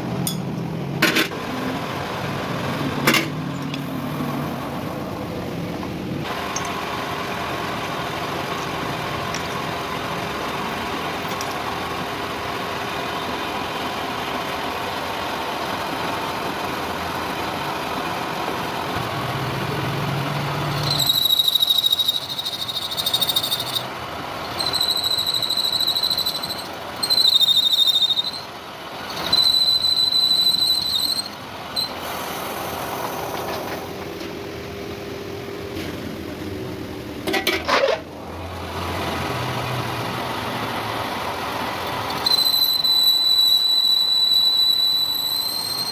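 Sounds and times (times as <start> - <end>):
boring tool squealing: 20.7 - 32.4, 41.8 - 45.9.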